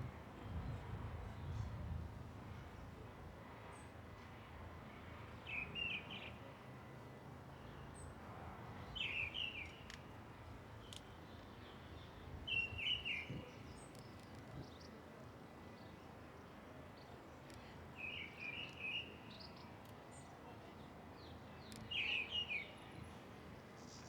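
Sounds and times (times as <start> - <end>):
songbird chirping: 17.0 - 20.3.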